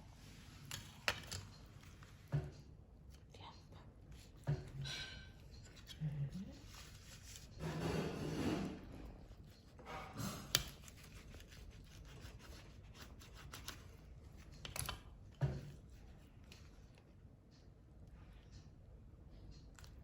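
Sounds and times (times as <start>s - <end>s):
knife scraping on board: 6.8s - 13.8s.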